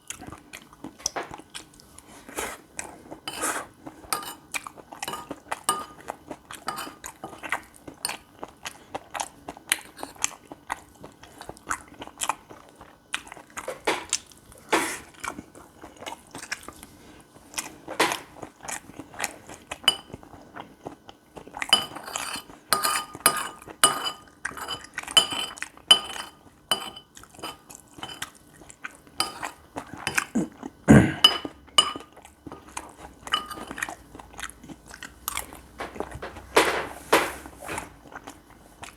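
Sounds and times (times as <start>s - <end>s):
chewing and crunching: 0.0s - 30.9s, 31.5s - 36.4s, 37.7s - 38.9s
metal spoon scraping dish: 3.3s - 6.0s, 6.6s - 7.5s, 21.8s - 28.2s, 29.2s - 30.2s, 31.2s - 32.7s, 33.3s - 33.8s.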